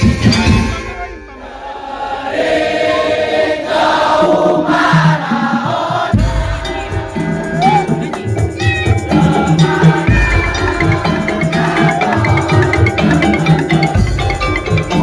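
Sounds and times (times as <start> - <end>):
percussion ensemble music: 0.0 - 15.0
low drums: 3.7 - 15.0.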